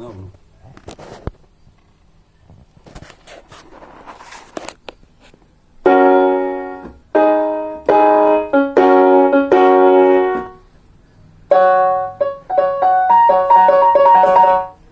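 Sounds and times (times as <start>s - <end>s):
electronic keyboard chords: 5.8s - 10.7s, 11.5s - 14.9s.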